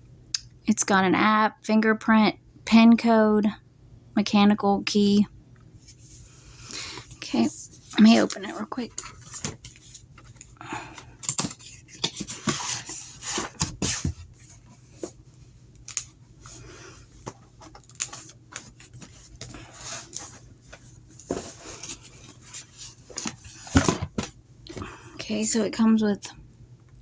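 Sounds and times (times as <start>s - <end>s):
packaging clicks and knocks: 11.0s - 13.9s
cardboard box rustling and scraping: 11.4s - 15.2s, 17.2s - 24.3s.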